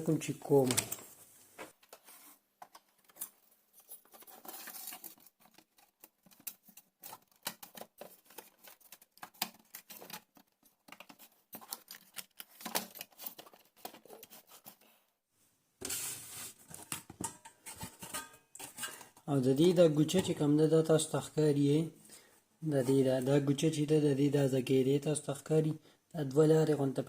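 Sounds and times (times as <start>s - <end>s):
small clicks and scrapes: 0.7s - 15.1s.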